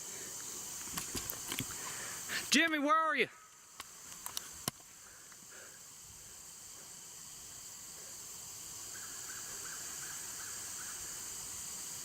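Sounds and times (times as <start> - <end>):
high-pitched insect chorus: 0.0 - 12.0
sharp clicks: 3.5 - 5.4.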